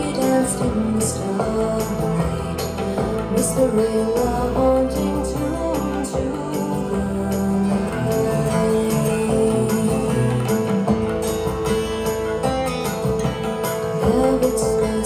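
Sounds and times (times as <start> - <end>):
music over speakers: 0.0 - 15.0.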